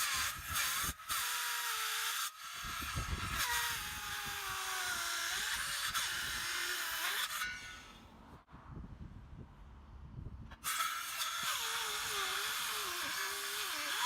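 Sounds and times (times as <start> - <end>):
circular saw cutting board: 3.3 - 8.1, 10.6 - 14.0.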